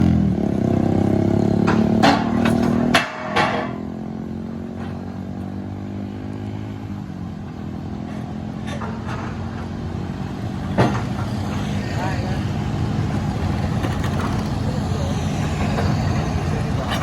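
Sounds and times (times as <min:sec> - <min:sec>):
excavator diesel engine running: 0:07.5 - 0:17.0.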